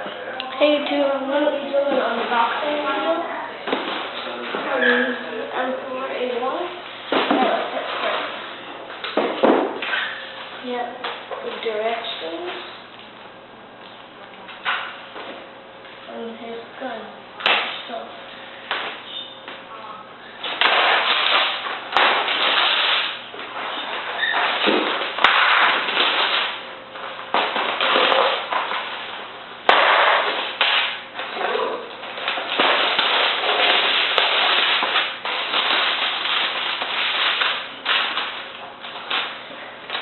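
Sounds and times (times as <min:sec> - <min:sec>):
packaging crackling and rustling: 0:20.4 - 0:40.0.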